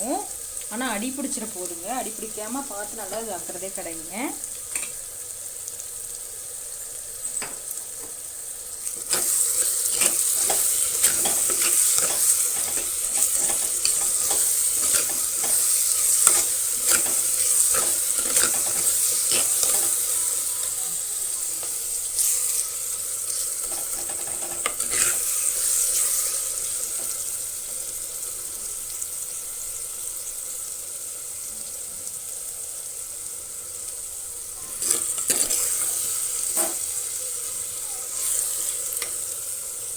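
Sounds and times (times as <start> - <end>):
onions sizzling in oil: 0.0 - 39.9
spoon scraping a pan: 4.7 - 5.0, 8.8 - 27.4, 34.6 - 39.3.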